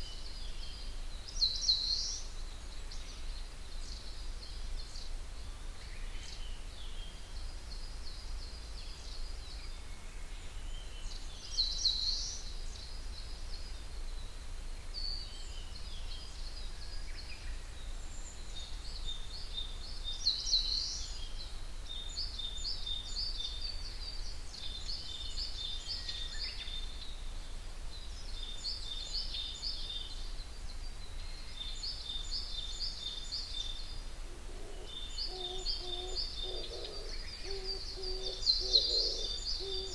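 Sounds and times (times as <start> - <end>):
songbirds singing trills: 0.0 - 39.9
loud bird calls: 34.4 - 39.9.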